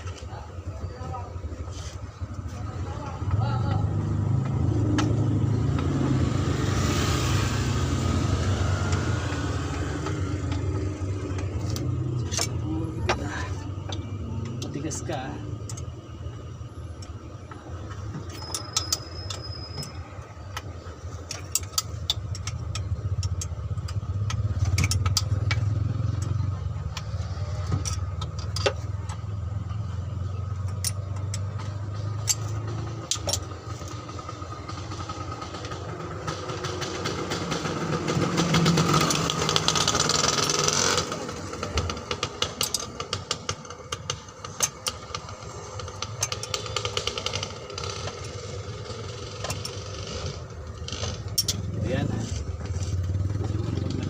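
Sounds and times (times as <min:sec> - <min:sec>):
engine droning: 0:00.0 - 0:54.0
hand tools clinking on metal: 0:18.2 - 0:20.1, 0:51.2 - 0:51.8.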